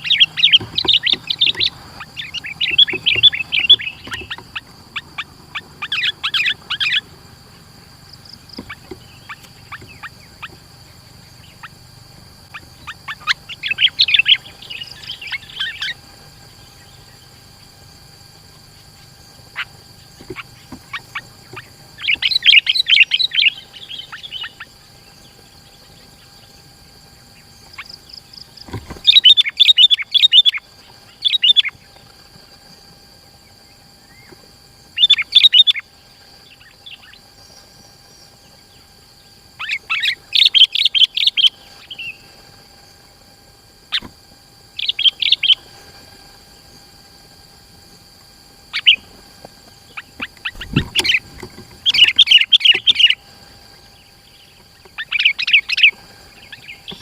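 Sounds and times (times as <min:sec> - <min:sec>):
bird chirping rapidly: 0:00.0 - 0:17.8, 0:18.6 - 0:26.6, 0:27.4 - 0:31.8, 0:35.0 - 0:37.3, 0:39.6 - 0:42.2, 0:44.8 - 0:45.7, 0:48.6 - 0:49.0, 0:49.8 - 0:57.0.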